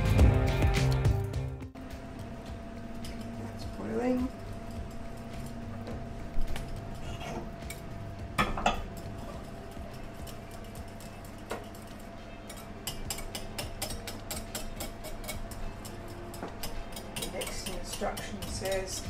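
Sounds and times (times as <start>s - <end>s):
whisk scraping a saucepan: 9.9s - 19.0s.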